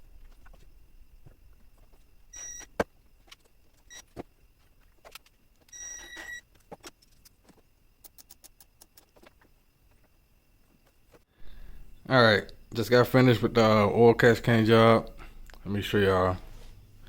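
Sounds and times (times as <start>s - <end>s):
short high-pitched squeaks: 5.7s - 6.5s.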